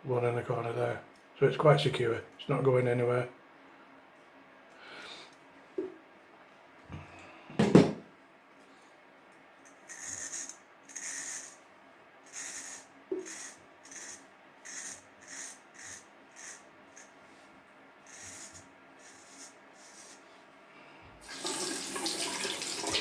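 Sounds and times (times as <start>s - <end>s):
sharp knock: 7.6s - 8.0s
razor cutting stubble: 12.3s - 17.2s.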